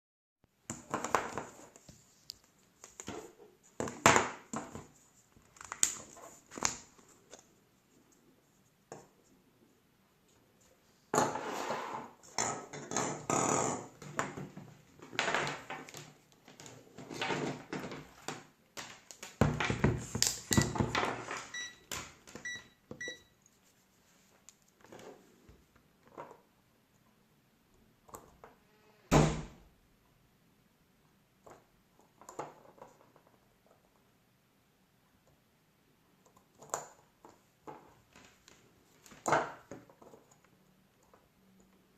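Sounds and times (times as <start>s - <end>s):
rustling and scraping: 10.2s - 12.7s.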